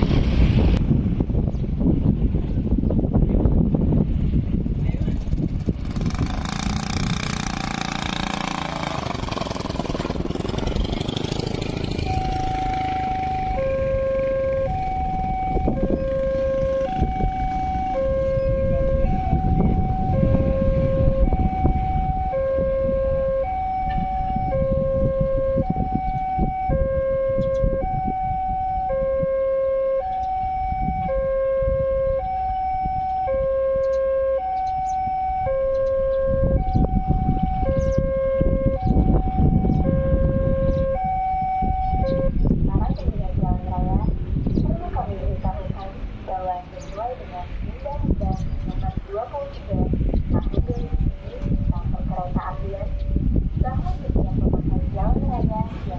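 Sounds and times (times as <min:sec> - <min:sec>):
road traffic rumble: 0:00.0 - 0:55.9
loud rush of passing noise: 0:03.9 - 0:55.9
level-crossing warning siren: 0:06.7 - 0:42.6.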